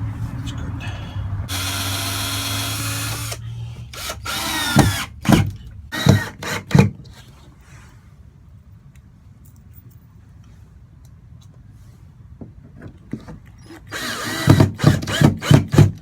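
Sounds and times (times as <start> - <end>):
power drill driving screws: 1.5 - 6.9, 13.7 - 15.9.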